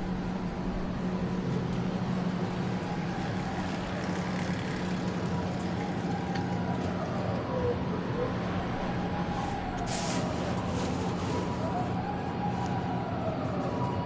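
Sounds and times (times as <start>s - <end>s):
idling vehicle engine hum: 0.0s - 7.5s
street ambience: 0.0s - 14.0s.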